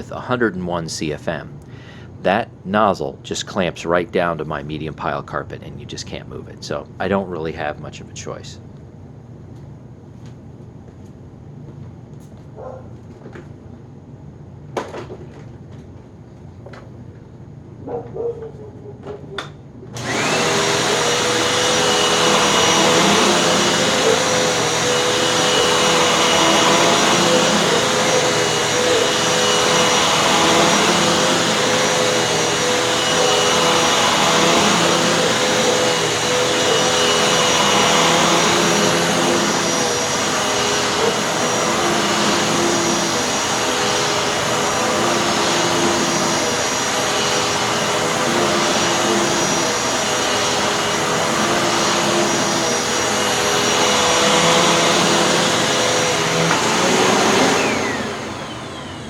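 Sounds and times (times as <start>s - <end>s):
vacuum cleaner running: 0.0s - 7.7s, 19.9s - 59.0s.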